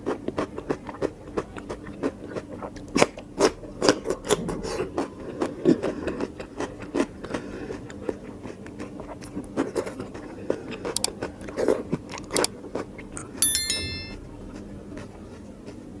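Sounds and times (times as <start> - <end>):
high multi-tone ringing: 13.4 - 14.2.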